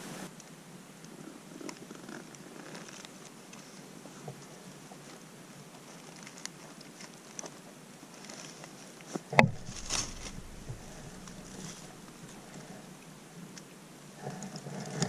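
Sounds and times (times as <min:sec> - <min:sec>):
leaf litter crackling: 0:08.1 - 0:13.1
rifle shot: 0:09.4 - 0:12.4
rolling echo rumble: 0:09.4 - 0:13.2.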